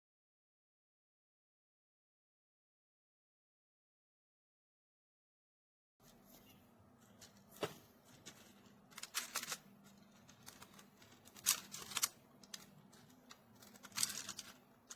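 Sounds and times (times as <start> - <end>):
magnetic toy cubes clicking: 9.0 - 14.9.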